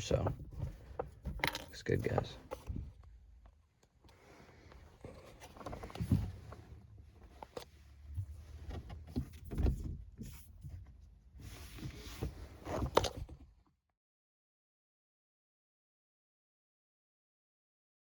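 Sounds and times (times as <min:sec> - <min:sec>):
knocks and clicks of handling: 0:00.0 - 0:04.0.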